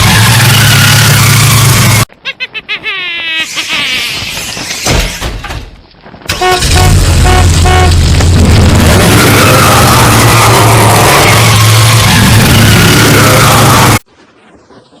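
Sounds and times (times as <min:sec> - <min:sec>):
distorted car horn honks: 0:06.3 - 0:08.0
loud harsh noise: 0:06.4 - 0:14.0.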